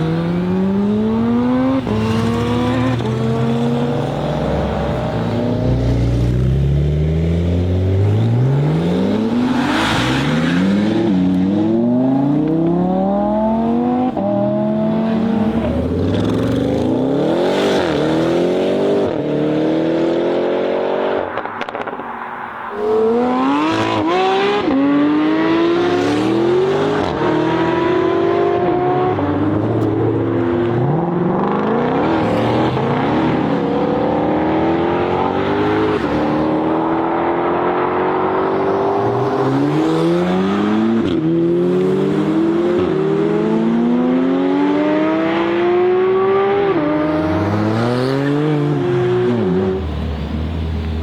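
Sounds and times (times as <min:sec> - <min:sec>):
supercar engines revving: 0:00.0 - 0:22.0.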